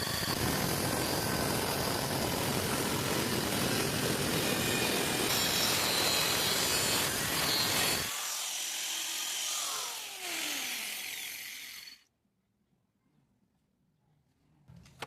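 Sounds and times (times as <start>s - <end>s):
electric grinder on drill bit: 0.0s - 12.0s.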